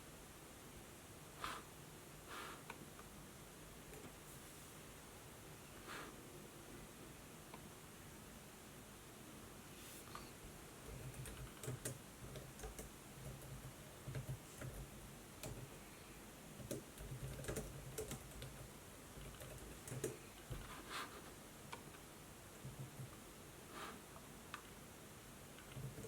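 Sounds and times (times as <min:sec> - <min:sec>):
laptop keyboard typing: 0:10.8 - 0:15.7, 0:16.6 - 0:20.2, 0:25.6 - 0:26.0.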